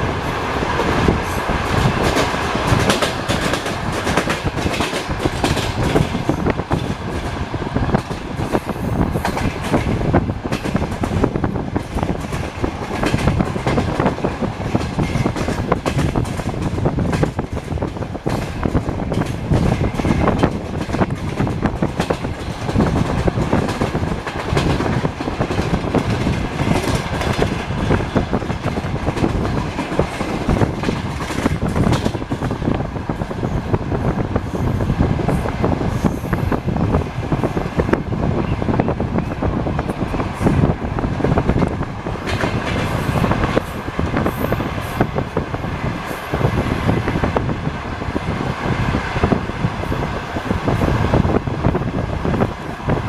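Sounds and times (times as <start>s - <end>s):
train carriage rumble: 0.0s - 53.0s.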